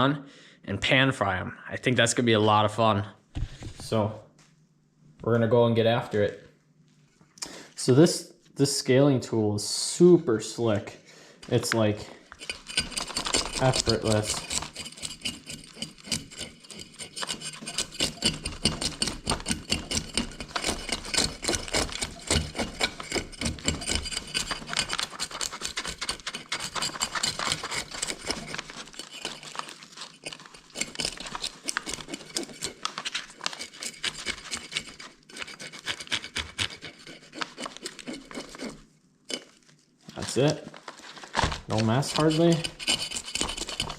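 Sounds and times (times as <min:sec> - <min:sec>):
fish scaler scraping scales: 0:12.3 - 0:39.8, 0:41.6 - 0:43.9.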